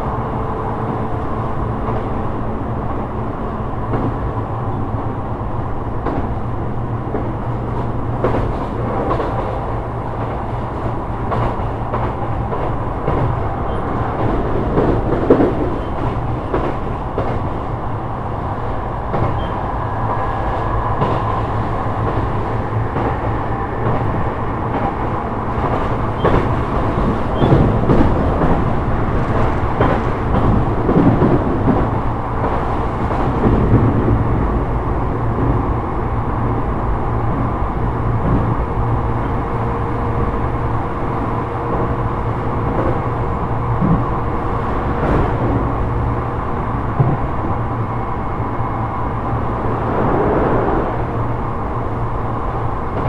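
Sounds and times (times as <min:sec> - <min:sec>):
train wheels rumbling on rail: 0:00.0 - 0:53.0
track clicks and knocks: 0:05.9 - 0:34.3, 0:39.2 - 0:51.5.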